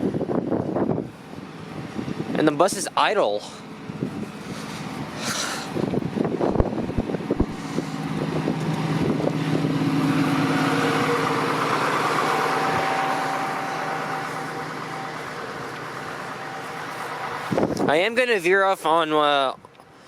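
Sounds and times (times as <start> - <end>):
vehicle engine hum passing: 0.0 - 19.0
thin steady whine: 2.2 - 17.7.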